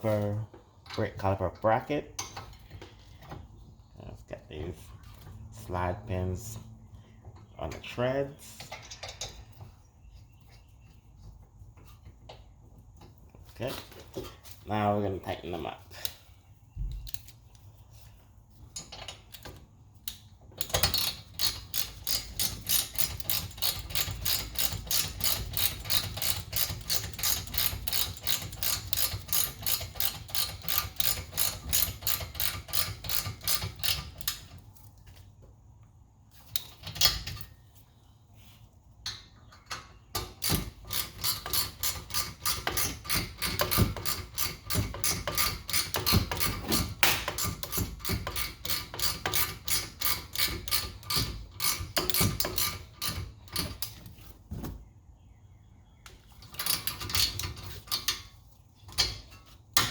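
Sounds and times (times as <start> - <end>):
ratchet wrench clicking: 18.8 - 34.5, 40.4 - 53.9.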